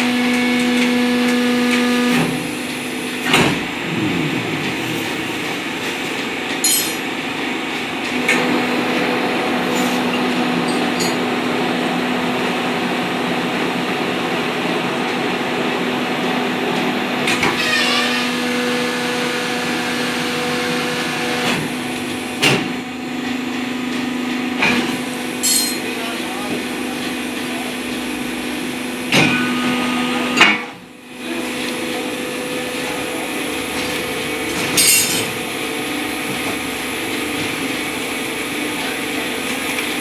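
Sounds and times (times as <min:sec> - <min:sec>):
hydraulic power pack humming: 0:00.1 - 0:07.6
sharp metallic clanks: 0:06.6 - 0:07.1, 0:25.4 - 0:25.8.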